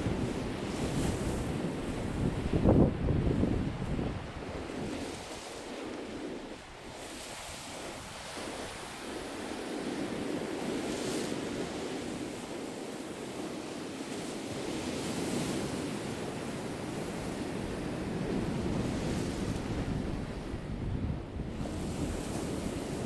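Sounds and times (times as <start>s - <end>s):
ocean waves breaking on shore: 0.0s - 23.0s
wind on microphone: 0.0s - 23.0s.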